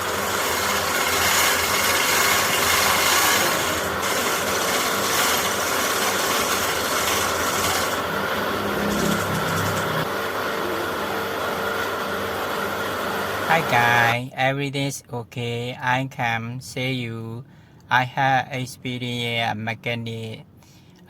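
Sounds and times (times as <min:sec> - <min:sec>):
mechanical running noise with hiss: 0:00.0 - 0:13.8.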